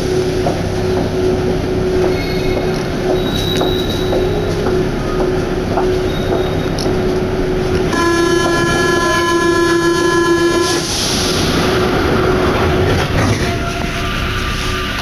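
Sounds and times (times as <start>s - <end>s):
steady rich tone: 0.0s - 10.9s
metro train running noise: 0.0s - 15.0s.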